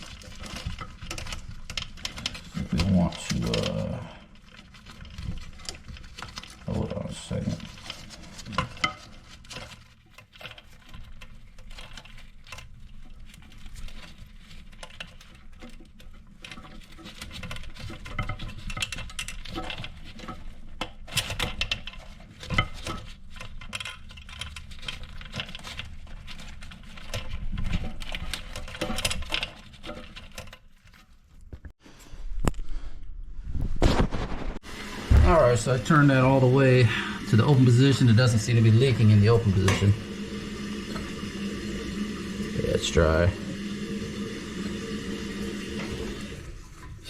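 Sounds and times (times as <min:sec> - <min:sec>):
clicks and taps on toilet tank parts: 0:14.7 - 0:30.6.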